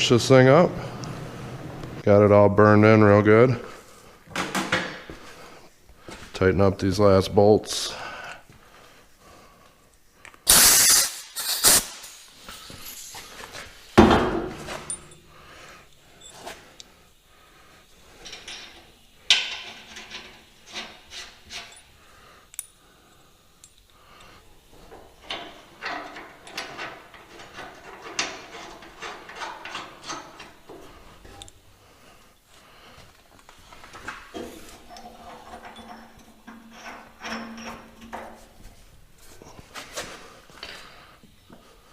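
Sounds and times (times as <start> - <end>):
metal clanks and knocks: 14.0 - 15.3, 24.9 - 31.5, 34.3 - 38.5.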